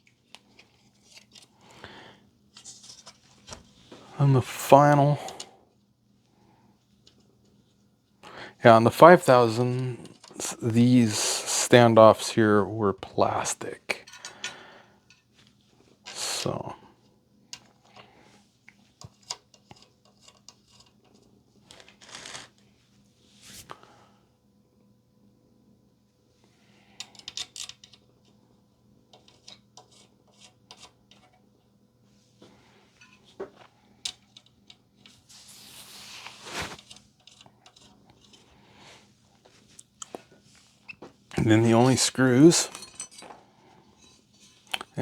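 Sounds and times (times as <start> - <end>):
short rustle: 35.3 - 37.0.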